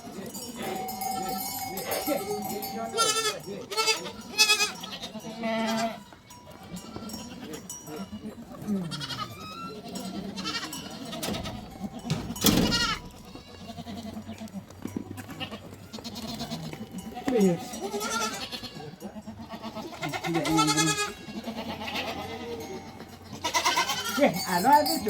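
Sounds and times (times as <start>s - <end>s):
goats bleating: 0.0s - 25.0s.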